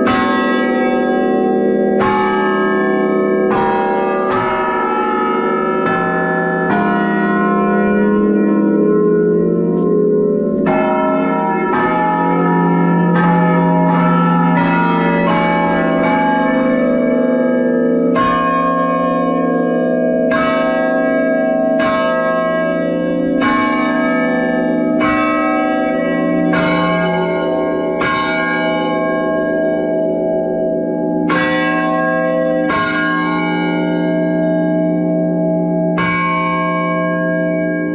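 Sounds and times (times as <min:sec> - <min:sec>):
chime bells slow melody: 0:05.0 - 0:29.6.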